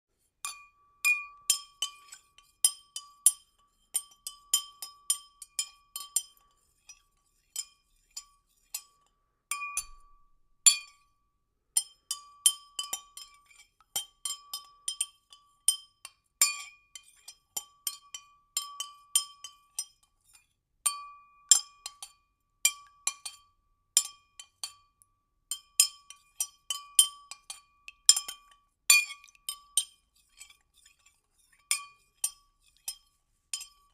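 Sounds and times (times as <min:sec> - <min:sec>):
clinks against glass: 0:31.6 - 0:33.9.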